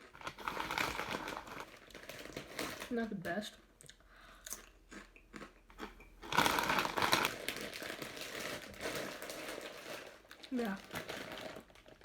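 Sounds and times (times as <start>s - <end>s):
chip bag crinkling: 0.0s - 3.1s, 6.2s - 12.0s
small clicks and crunches: 0.1s - 3.1s, 6.3s - 12.0s.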